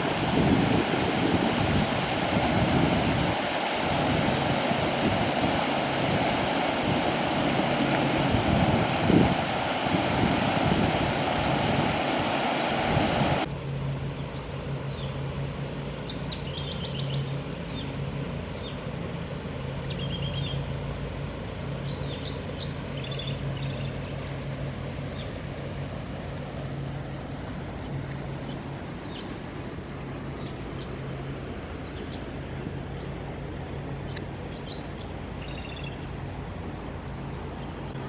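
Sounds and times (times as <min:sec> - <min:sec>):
loud rushing noise: 0:00.0 - 0:13.5
steady low hum: 0:00.0 - 0:38.0
small birds chirping: 0:13.4 - 0:18.0, 0:19.8 - 0:20.7, 0:21.8 - 0:24.3, 0:27.8 - 0:31.0, 0:31.8 - 0:33.2, 0:34.0 - 0:38.0.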